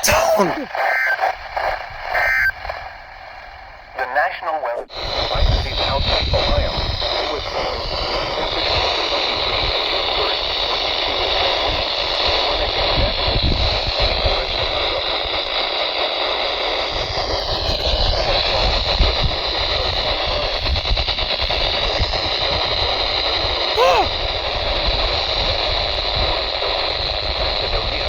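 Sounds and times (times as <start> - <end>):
radio whistle: 0.0 - 3.0
radio static hiss: 0.0 - 3.2, 3.8 - 16.9, 17.6 - 23.7.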